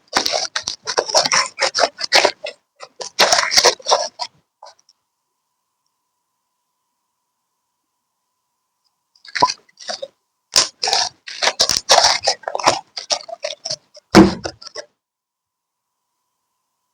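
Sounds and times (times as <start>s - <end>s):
slime squelching: 0.0s - 4.8s, 9.3s - 14.9s.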